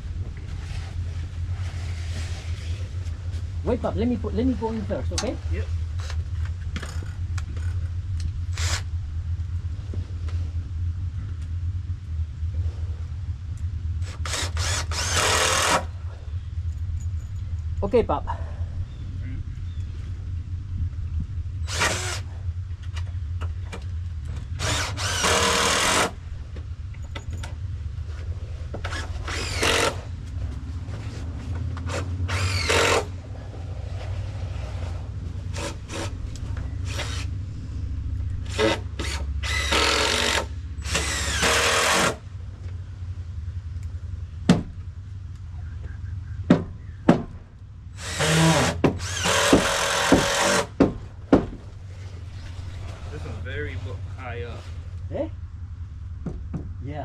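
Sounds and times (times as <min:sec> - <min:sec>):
low steady hum: 0:00.0 - 0:57.0
drill driving screws into wood: 0:08.5 - 0:08.9, 0:14.0 - 0:15.9, 0:21.6 - 0:22.3, 0:24.6 - 0:26.2, 0:28.8 - 0:30.1, 0:31.8 - 0:33.1, 0:35.5 - 0:36.1, 0:36.8 - 0:37.3, 0:38.5 - 0:42.2, 0:48.0 - 0:50.8
sharp knocks: 0:46.4 - 0:47.4, 0:48.4 - 0:51.7, 0:56.2 - 0:56.8.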